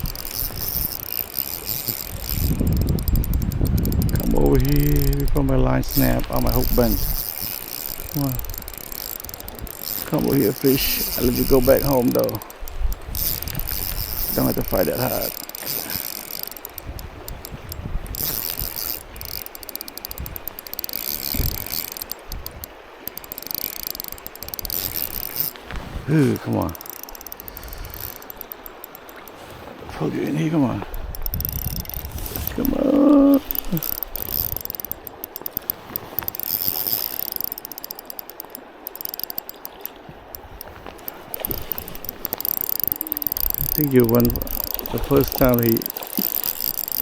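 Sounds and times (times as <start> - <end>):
fishing reel ratcheting: 0.0 - 29.5, 30.7 - 47.0
stream water rushing: 0.0 - 47.0.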